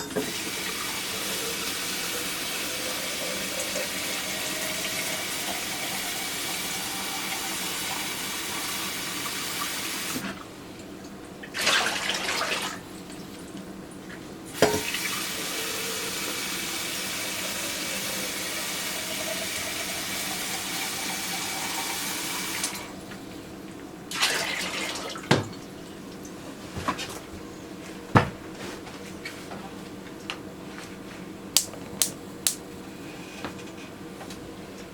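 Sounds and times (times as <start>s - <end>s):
faucet water running into jar: 0.2s - 10.2s, 14.6s - 22.8s.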